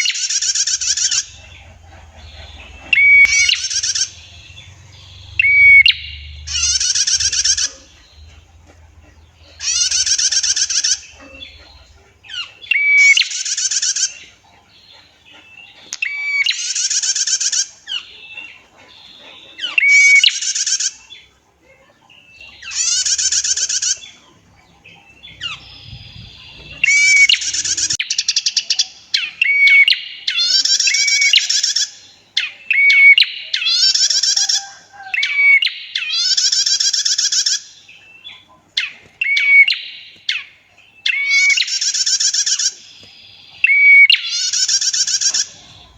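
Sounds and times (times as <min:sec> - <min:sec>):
bird rapid trills: 0:00.0 - 0:14.4, 0:22.5 - 0:24.2, 0:25.2 - 0:31.9.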